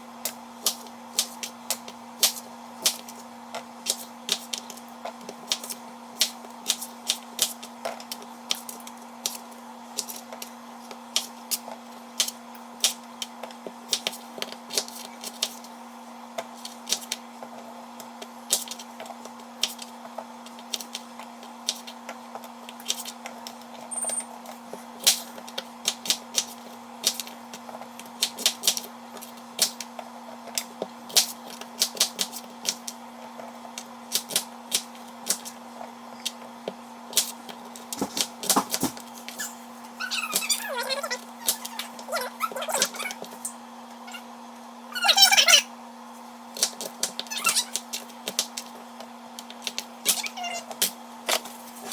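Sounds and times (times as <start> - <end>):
steady electrical hum: 0.0 - 51.9.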